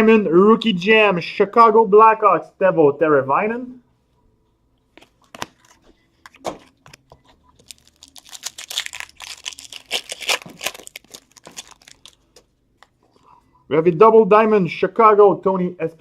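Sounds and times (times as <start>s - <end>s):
wrapper tearing and crinkling: 7.6s - 12.9s.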